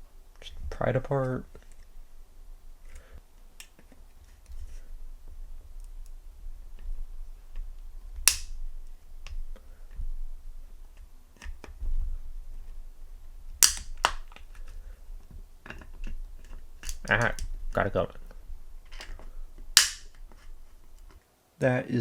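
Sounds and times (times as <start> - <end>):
sharp metal snap: 8.2 - 8.6, 13.6 - 14.4, 16.4 - 17.5, 19.8 - 20.2.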